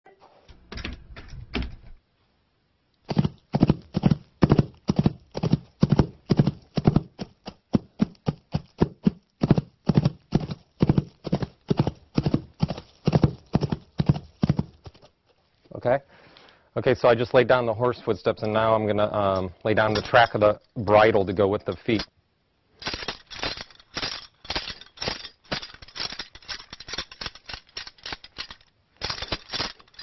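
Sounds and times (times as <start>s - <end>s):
horse hooves clip-clopping: 3.1s - 15.1s, 22.8s - 30.0s.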